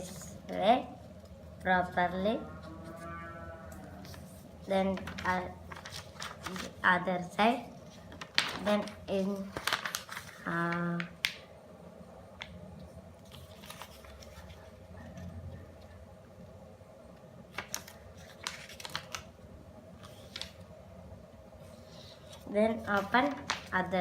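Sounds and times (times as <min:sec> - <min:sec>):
paper folding and rustling: 0:04.0 - 0:06.8, 0:07.8 - 0:11.4, 0:13.2 - 0:15.4, 0:17.5 - 0:19.4, 0:20.0 - 0:20.7, 0:21.6 - 0:24.0.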